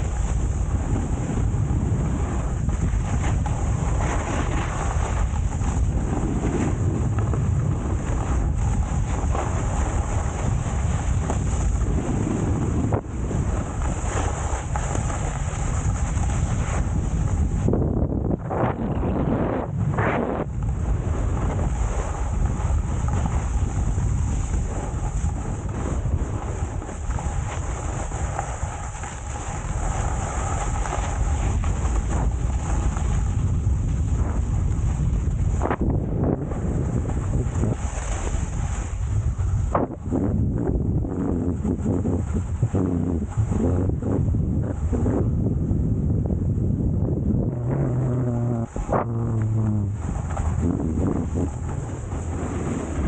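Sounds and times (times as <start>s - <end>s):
hiss of snow under skis: 0.0s - 7.0s, 8.0s - 17.7s, 20.9s - 39.7s, 47.8s - 53.0s
wind buffeting microphone: 0.0s - 53.0s.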